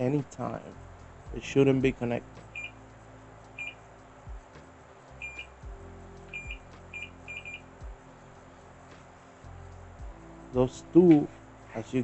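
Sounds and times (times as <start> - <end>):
multimeter short high beeps: 3.6 - 3.8, 5.2 - 5.5, 6.3 - 7.6.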